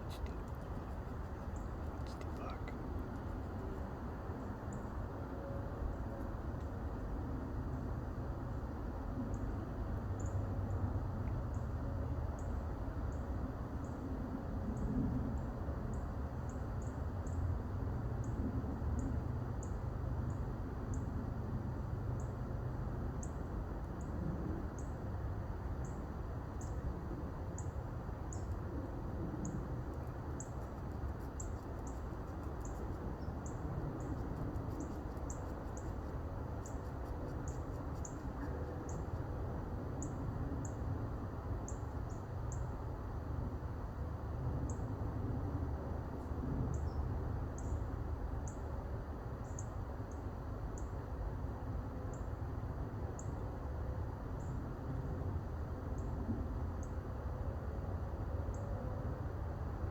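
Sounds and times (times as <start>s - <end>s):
steady low rumble: 0.0s - 8.4s, 19.9s - 48.3s.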